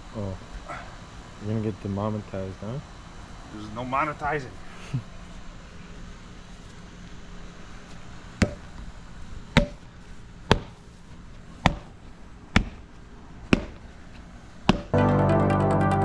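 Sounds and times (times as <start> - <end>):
tool striking stone with ringing: 9.6 - 9.8.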